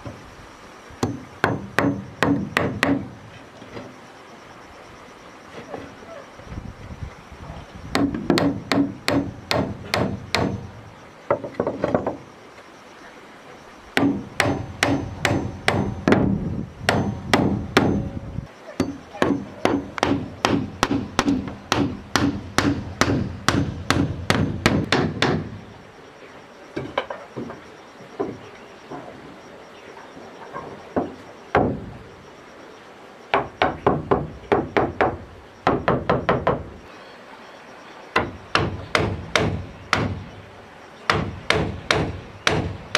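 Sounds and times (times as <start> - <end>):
hammer blows on wood: 14.0 - 25.6.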